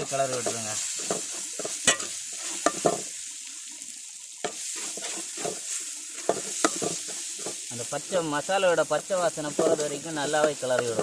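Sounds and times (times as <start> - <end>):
spoon scraping and knocking pan: 0.0 - 3.2, 4.4 - 7.7, 9.5 - 11.0
masala sizzling in oil: 0.0 - 11.0.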